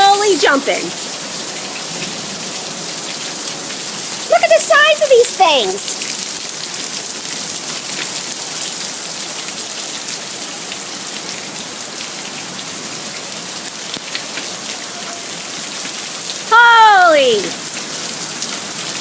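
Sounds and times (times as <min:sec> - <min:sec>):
hailstones ticking: 0:00.0 - 0:14.8
heavy rain downpour: 0:00.0 - 0:19.0.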